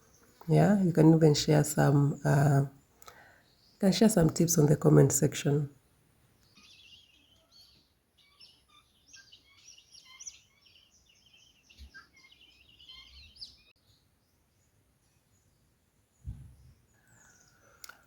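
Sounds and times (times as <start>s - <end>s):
faint bird chirps and twitters: 6.4s - 18.0s.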